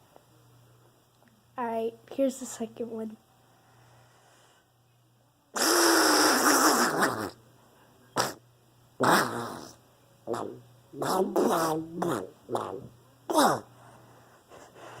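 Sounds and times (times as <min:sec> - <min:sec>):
woman blowing fart-like noise: 0:05.6 - 0:07.4, 0:08.2 - 0:08.4, 0:09.0 - 0:13.6.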